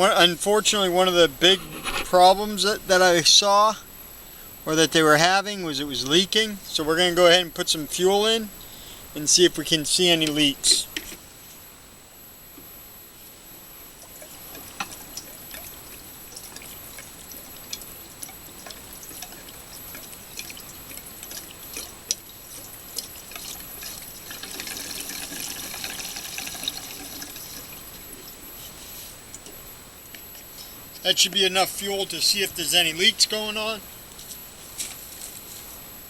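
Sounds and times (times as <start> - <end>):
liquid trickling into fuel tank: 14.1 - 27.9.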